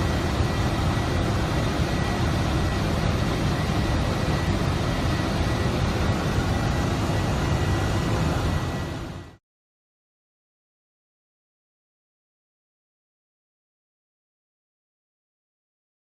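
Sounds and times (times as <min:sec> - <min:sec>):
engine and airflow rumble: 0:00.0 - 0:09.4
thin high whine: 0:00.0 - 0:09.4.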